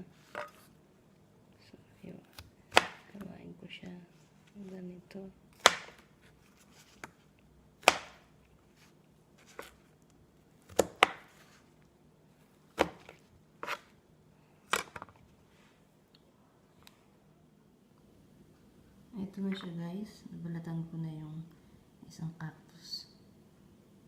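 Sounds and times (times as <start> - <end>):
knife cutting fruit: 2.1 - 3.4, 7.8 - 9.9, 12.7 - 14.0.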